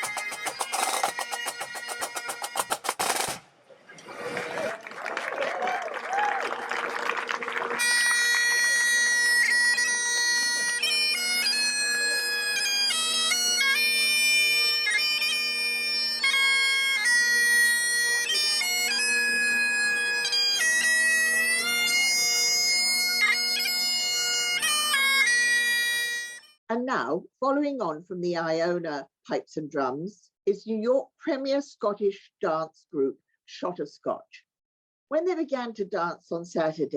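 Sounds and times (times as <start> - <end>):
bagpipes playing: 0.0 - 3.3, 6.8 - 26.6.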